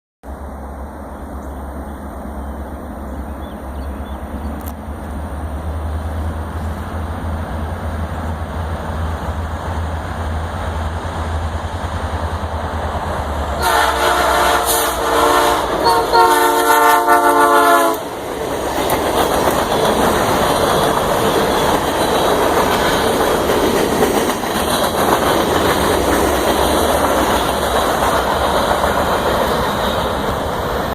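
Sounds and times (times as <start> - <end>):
locomotive horn blasts: 13.6 - 18.1
train wheels clattering over rail joints: 17.9 - 30.9.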